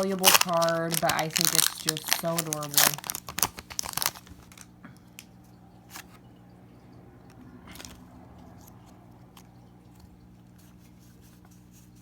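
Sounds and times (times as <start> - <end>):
cards rustling: 0.0 - 5.3
foil wrapper crinkling: 0.0 - 5.3
low steady hum: 0.0 - 12.0.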